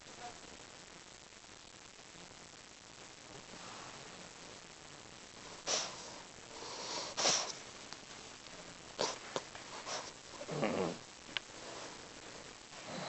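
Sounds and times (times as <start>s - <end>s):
dog snoring: 9.9s - 11.0s, 12.8s - 13.0s.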